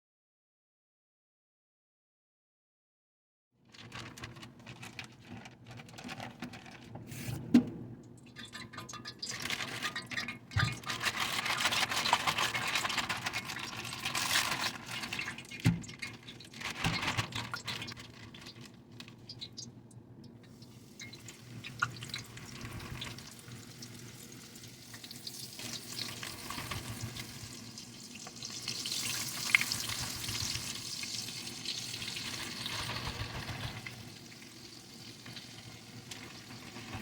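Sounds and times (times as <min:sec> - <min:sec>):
chicken frying in hot oil: 0:08.2 - 0:37.0.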